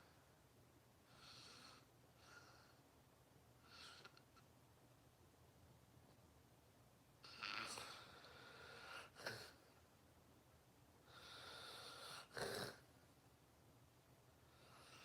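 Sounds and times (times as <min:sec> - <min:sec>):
faint snoring breaths: 0:01.1 - 0:02.8, 0:07.2 - 0:09.6, 0:11.0 - 0:12.9, 0:14.5 - 0:15.0.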